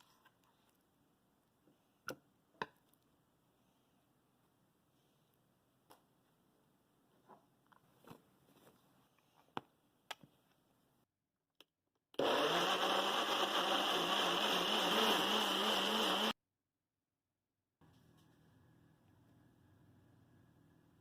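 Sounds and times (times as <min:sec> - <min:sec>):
electric blender running: 0:12.2 - 0:16.4.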